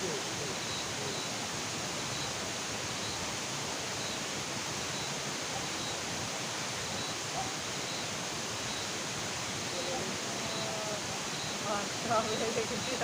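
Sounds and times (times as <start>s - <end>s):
night ambience hiss: 0.0s - 13.0s
faint high chirp: 0.6s - 1.4s, 4.8s - 6.0s, 6.8s - 9.0s, 9.6s - 13.0s.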